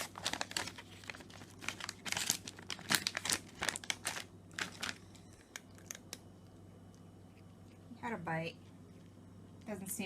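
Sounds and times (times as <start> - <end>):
plastic packet crinkling: 0.0 - 6.2.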